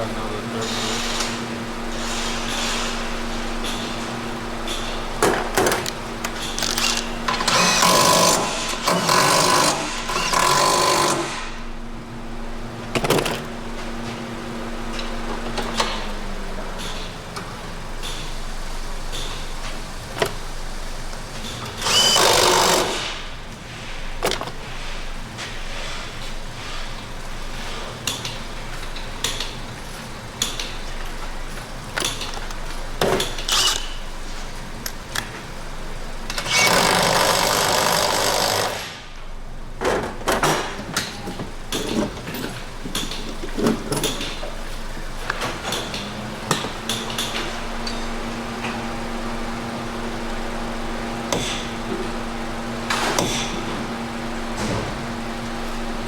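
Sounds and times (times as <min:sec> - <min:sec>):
air tool burst: 0:06.6 - 0:11.6, 0:21.8 - 0:23.2, 0:36.4 - 0:39.1
hand tools clanking on metal: 0:31.9 - 0:34.0.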